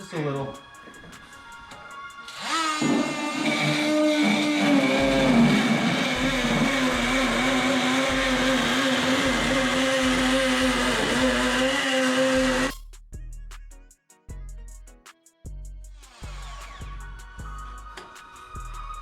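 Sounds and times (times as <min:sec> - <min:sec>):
power tool motor whining: 0:02.2 - 0:12.7
music with steady bass beat: 0:04.6 - 0:19.0.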